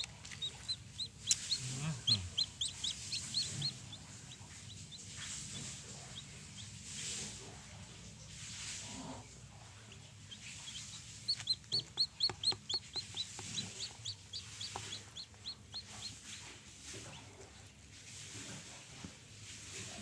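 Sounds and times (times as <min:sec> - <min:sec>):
chick peeping: 0:00.0 - 0:07.6, 0:09.6 - 0:17.5.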